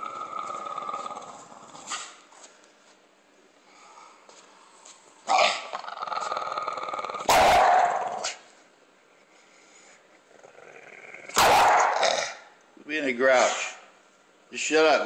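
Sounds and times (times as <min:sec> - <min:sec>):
dog growling: 0:00.0 - 0:02.2, 0:05.3 - 0:08.4, 0:10.2 - 0:12.5
dog bark-growl: 0:05.3 - 0:08.4, 0:10.5 - 0:12.5.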